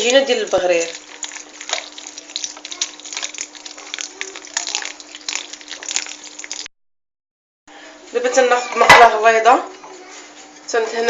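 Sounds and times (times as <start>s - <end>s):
batter sloshing in bowl: 0.0s - 6.7s
mixing clicks and splashes: 0.0s - 6.7s.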